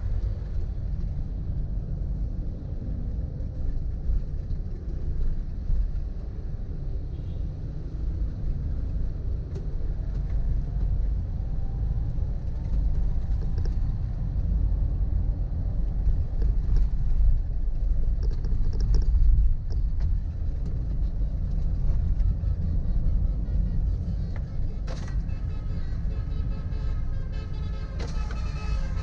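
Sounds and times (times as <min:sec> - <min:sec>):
vehicle road and engine rumble: 0:00.0 - 0:29.0
faint clicks and knocks: 0:18.1 - 0:21.0.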